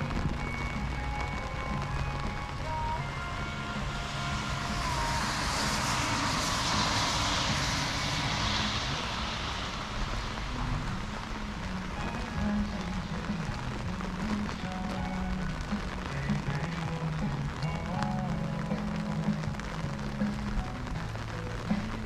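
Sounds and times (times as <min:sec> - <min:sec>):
motor vehicle passing by: 0:03.2 - 0:11.8.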